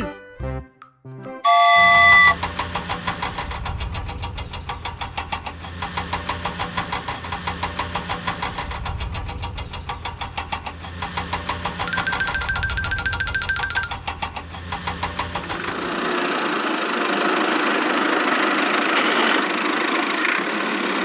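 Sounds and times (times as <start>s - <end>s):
cartoon horn honk: 1.4s - 2.4s
cartoon engine idling clatter: 2.0s - 21.0s.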